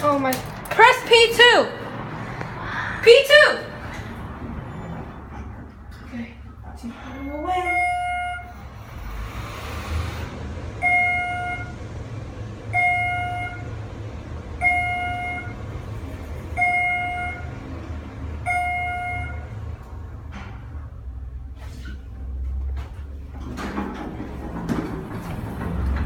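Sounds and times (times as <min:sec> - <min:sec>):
electronic beeper tones: 0:14.6 - 0:15.6, 0:16.6 - 0:17.6, 0:18.5 - 0:19.4.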